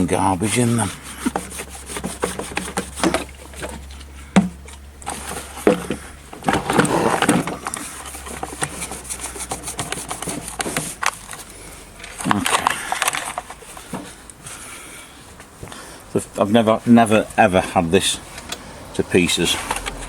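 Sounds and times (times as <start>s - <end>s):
clicks and scraping of small parts: 0.5s - 14.4s, 18.3s - 18.6s, 19.5s - 20.0s.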